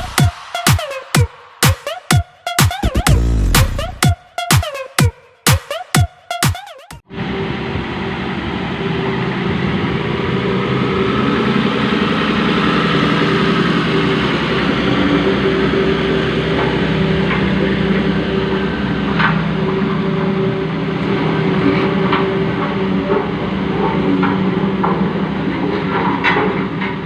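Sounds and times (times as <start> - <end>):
electronic music: 0.0 - 7.0
road roller engine running: 7.2 - 27.0.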